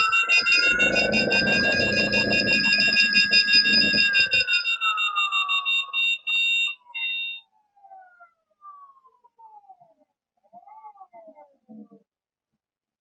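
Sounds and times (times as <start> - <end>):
motor rumble: 0.0 - 4.6
electric motor whine: 0.0 - 5.0
rapid alarm beeps: 0.0 - 7.4.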